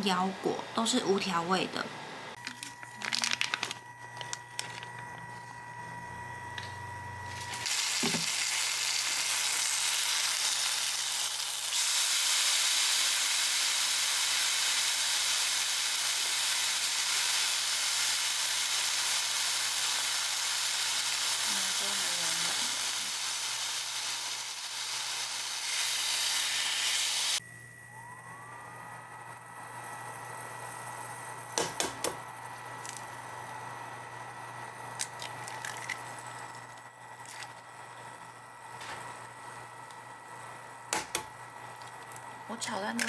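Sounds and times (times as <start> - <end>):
food sizzling in a frying pan: 7.6 - 27.4.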